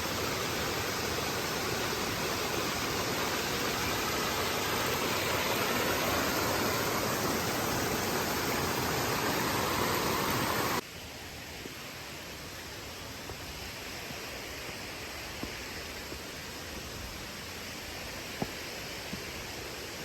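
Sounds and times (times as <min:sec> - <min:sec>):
waterfall rushing: 0:00.0 - 0:10.8.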